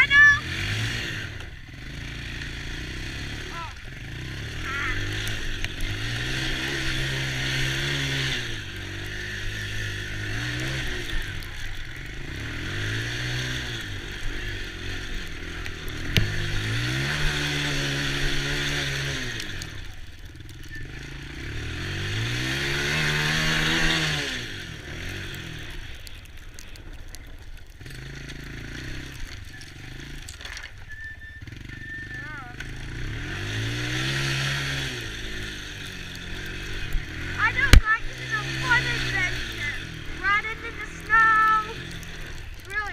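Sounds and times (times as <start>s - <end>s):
small engine revving: 0.0s - 42.9s.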